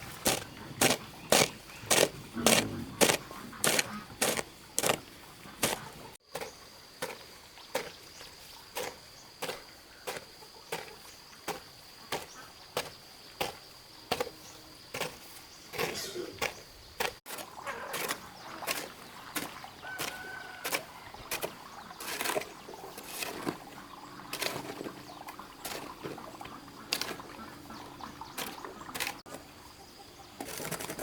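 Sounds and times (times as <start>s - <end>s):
hand tool chopping strikes: 0.3s - 5.0s.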